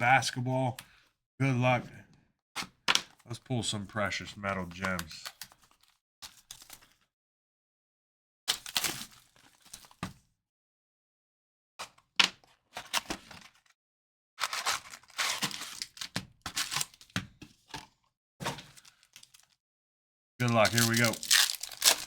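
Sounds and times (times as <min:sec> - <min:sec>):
card pack wrapping tearing: 0:14.4 - 0:16.0, 0:20.4 - 0:22.0.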